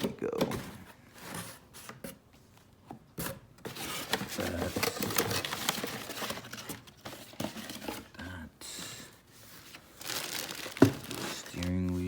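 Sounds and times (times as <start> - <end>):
packaging rustling and clicking: 3.7 - 8.1, 9.6 - 12.0.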